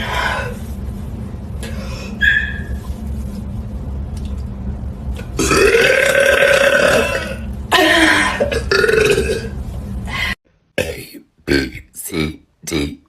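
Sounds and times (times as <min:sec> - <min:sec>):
low steady hum: 0:00.0 - 0:13.0
woman burping: 0:05.4 - 0:09.5.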